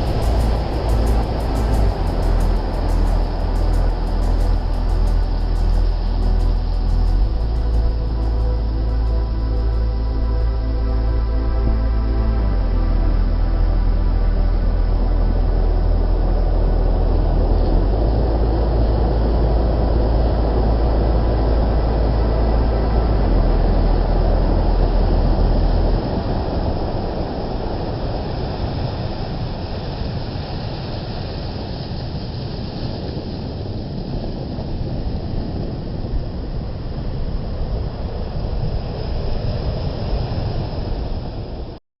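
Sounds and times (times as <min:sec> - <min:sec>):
deep bass line music: 0:00.0 - 0:27.2
stormy sea surf: 0:00.0 - 0:41.8
wind buffeting microphone: 0:00.0 - 0:41.8.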